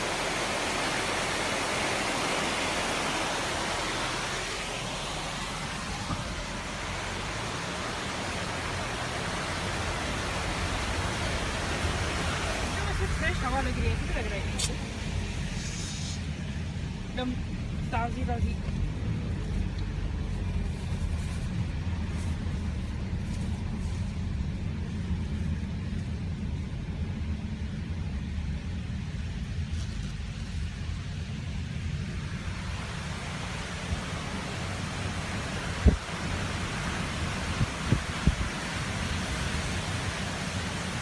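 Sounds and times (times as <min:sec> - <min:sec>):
rushing hiss: 0:00.0 - 0:17.9
road and wind rumble: 0:00.0 - 0:41.0.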